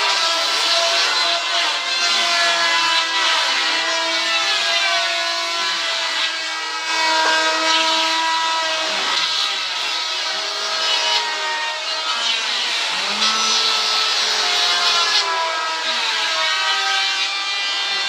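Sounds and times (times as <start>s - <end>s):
power tool cutting wood: 0.0s - 18.0s.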